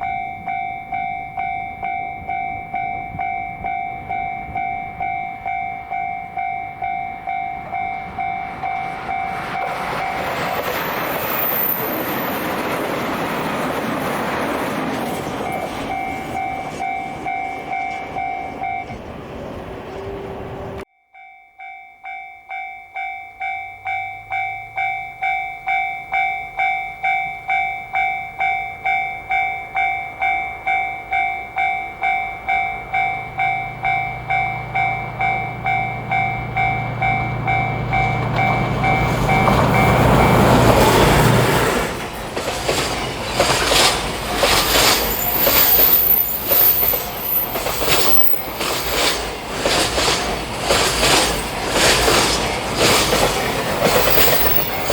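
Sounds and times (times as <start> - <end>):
crossing bell electronic dings: 0.0 - 12.4, 15.4 - 19.1, 20.8 - 41.0
wheels clicking over rail joints: 0.0 - 20.8, 25.7 - 54.9
diesel train drone: 0.0 - 20.9, 23.4 - 54.9.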